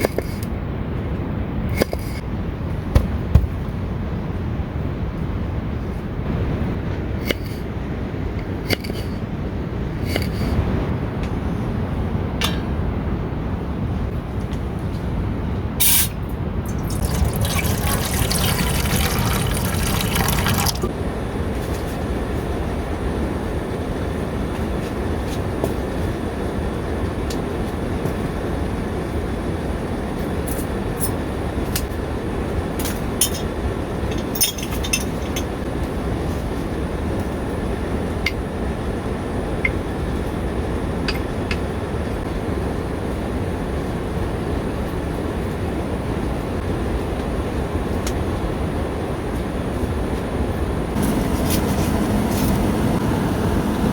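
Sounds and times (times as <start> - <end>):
water pouring into a pot: 16.7 - 20.9
small clinks and knocks: 34.2 - 35.5.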